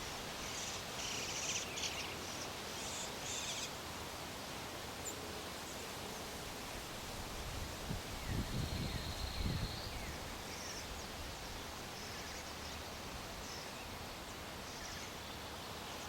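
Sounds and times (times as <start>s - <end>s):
wind buffeting microphone: 7.4s - 10.3s.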